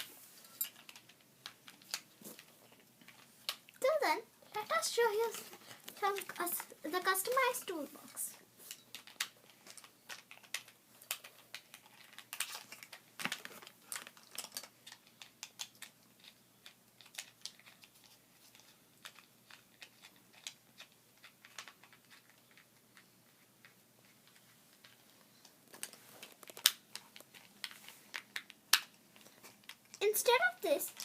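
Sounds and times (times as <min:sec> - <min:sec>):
plastic toy parts clicking: 0:08.7 - 0:17.9.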